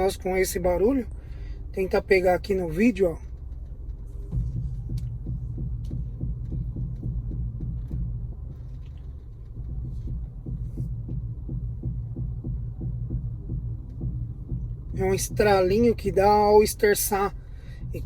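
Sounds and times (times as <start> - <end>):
car engine humming: 0.0 - 18.0
faint steering clicks: 1.1 - 15.0.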